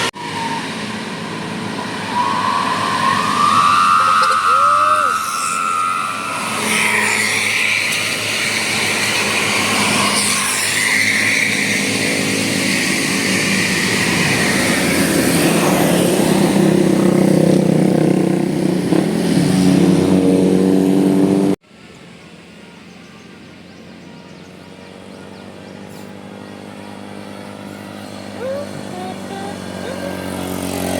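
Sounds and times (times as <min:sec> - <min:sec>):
passing traffic: 0:00.0 - 0:30.9
bus engine running: 0:11.0 - 0:30.9.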